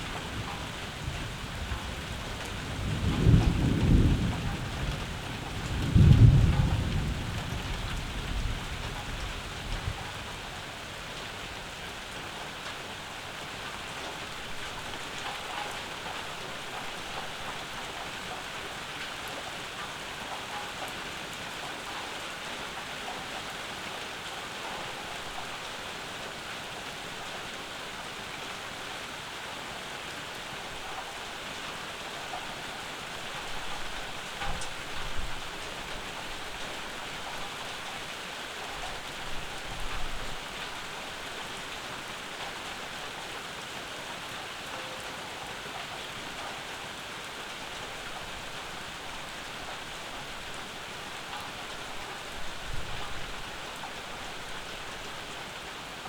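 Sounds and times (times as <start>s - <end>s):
steady rain falling: 0.0s - 56.0s.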